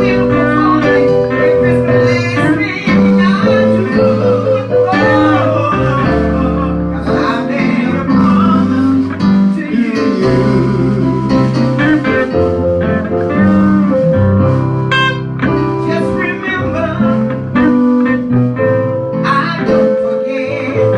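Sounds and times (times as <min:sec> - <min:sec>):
person singing gospel: 0:00.0 - 0:14.6, 0:15.6 - 0:18.3, 0:19.2 - 0:20.9
band with guitar: 0:00.0 - 0:20.9.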